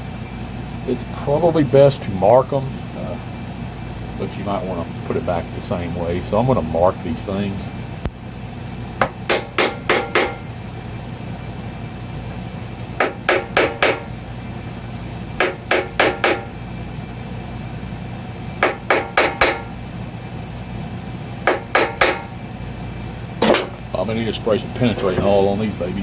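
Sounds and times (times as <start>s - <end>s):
hammer tapping metal punch: 9.0s - 10.5s, 13.0s - 14.2s, 15.4s - 16.6s, 18.6s - 19.8s, 21.4s - 22.4s, 23.4s - 23.8s.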